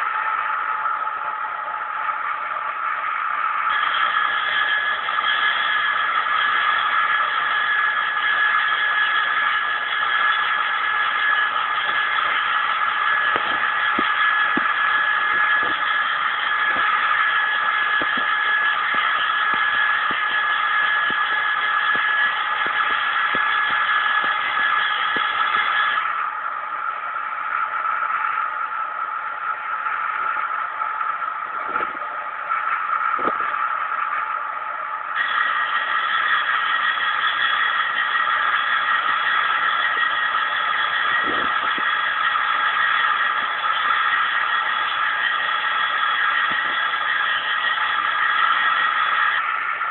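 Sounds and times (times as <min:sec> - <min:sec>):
electric grinder whining: 0:03.1 - 0:26.4, 0:35.1 - 0:49.9.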